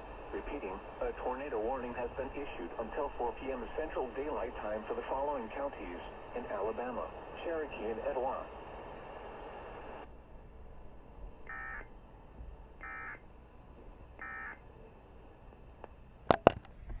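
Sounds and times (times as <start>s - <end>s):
digital data bursts: 11.5s - 11.9s.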